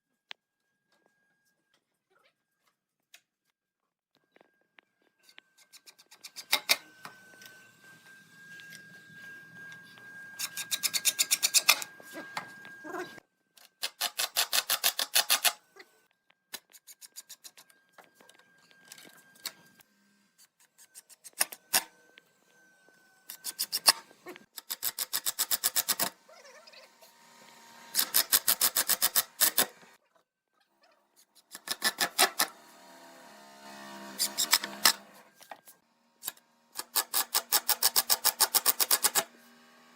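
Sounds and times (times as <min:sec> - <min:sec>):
hand tool scraping wood: 0:05.2 - 0:13.2, 0:16.6 - 0:19.8, 0:23.2 - 0:26.2, 0:31.3 - 0:32.6, 0:33.7 - 0:39.4.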